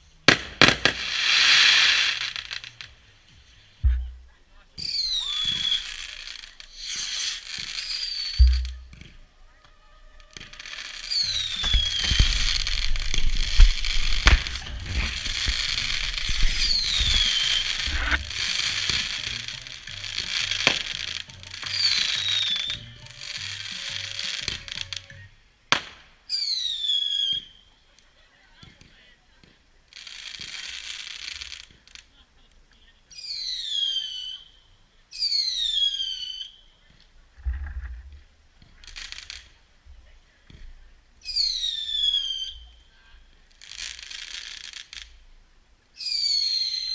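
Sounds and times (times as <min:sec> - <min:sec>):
fireworks bangs and crackling: 0:00.0 - 0:09.3, 0:10.2 - 0:34.5, 0:35.2 - 0:45.3, 0:46.0 - 0:46.9
low thump: 0:03.8 - 0:04.3, 0:08.4 - 0:09.2
falling firework whistle: 0:04.8 - 0:09.1, 0:10.2 - 0:19.3, 0:21.6 - 0:24.8, 0:26.3 - 0:27.7, 0:35.2 - 0:36.6, 0:41.2 - 0:42.8, 0:46.0 - 0:46.9.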